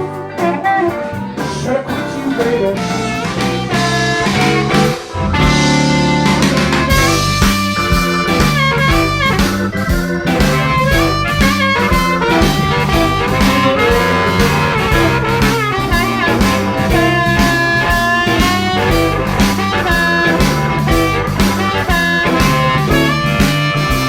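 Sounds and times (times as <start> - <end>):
bending lead guitar notes: 0.0 - 24.0
blues band playing: 0.0 - 24.0.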